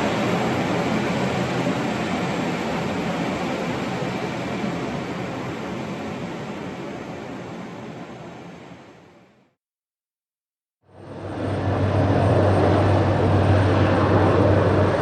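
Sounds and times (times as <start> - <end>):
aircraft engines rushing: 0.0 - 9.1, 11.0 - 15.0.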